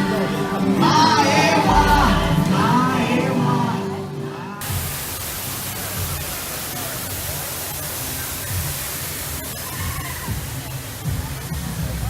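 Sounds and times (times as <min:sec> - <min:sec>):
faint voices: 0:00.0 - 0:12.0
steady hiss: 0:04.6 - 0:12.0.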